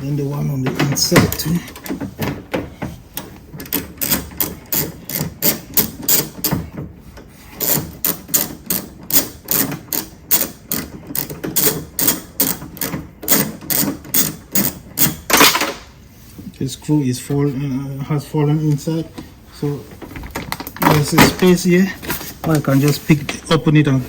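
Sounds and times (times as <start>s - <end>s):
ratchet wrench clicking: 3.7s - 6.5s, 7.6s - 15.3s.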